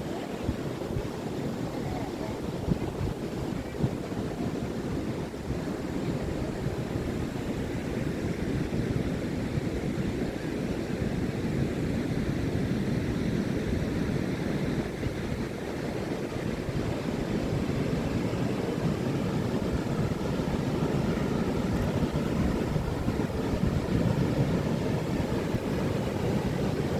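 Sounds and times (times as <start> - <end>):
ocean surf rushing: 14.2 - 26.9.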